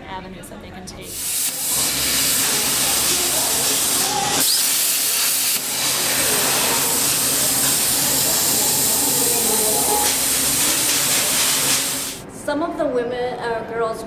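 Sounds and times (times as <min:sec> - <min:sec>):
welding arc hissing and crackling: 0:01.1 - 0:12.2.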